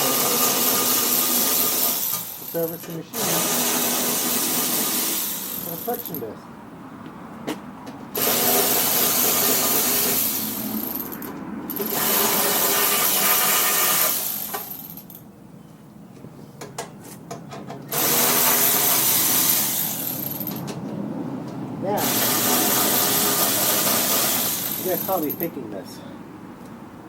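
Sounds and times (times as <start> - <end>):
power driver spinning out bolts: 22.0 - 25.5.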